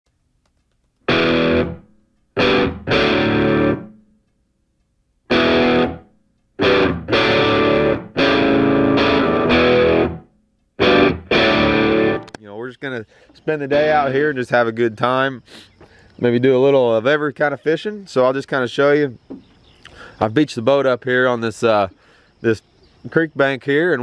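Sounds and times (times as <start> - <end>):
distorted electric guitar chords: 1.0 - 4.2, 5.3 - 12.4.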